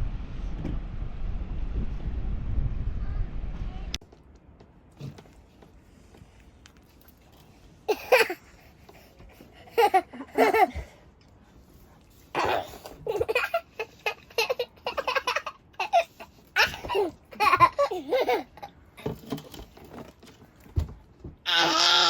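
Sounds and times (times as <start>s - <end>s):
child laughing and giggling: 7.9s - 11.0s, 12.4s - 19.1s.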